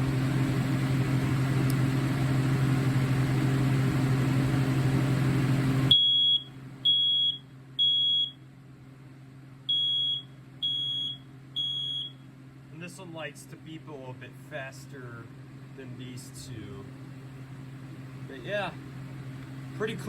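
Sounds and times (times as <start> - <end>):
steady low hum: 0.0 - 20.0
smoke alarm beeping: 5.9 - 8.4, 9.7 - 12.3.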